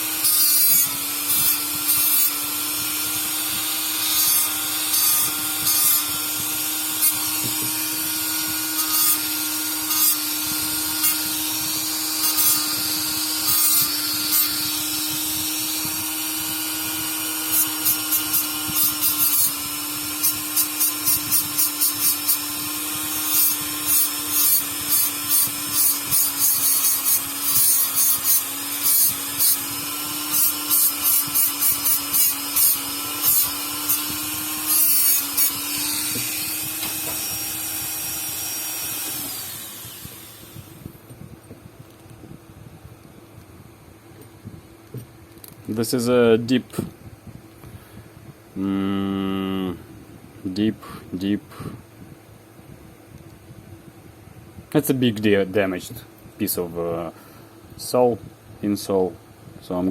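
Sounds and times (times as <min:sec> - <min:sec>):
power sander humming: 0:00.0 - 0:41.0
sander rubbing strokes: 0:00.0 - 0:41.0.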